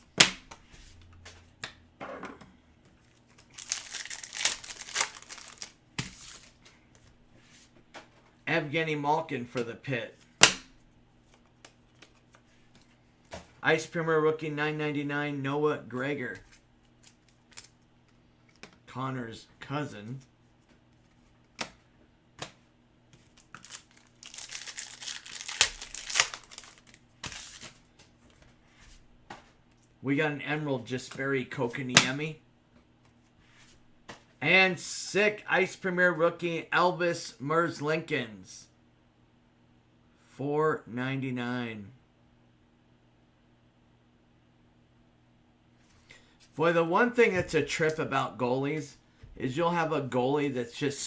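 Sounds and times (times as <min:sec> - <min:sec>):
card wrappers crinkling and tearing: 0:03.1 - 0:06.7, 0:16.5 - 0:17.8, 0:23.2 - 0:28.0.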